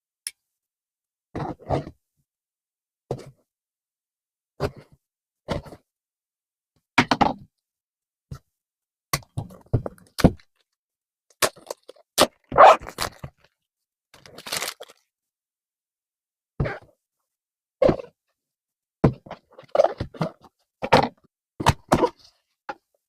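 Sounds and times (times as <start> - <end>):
packaging rustling: 14.2 - 15.0.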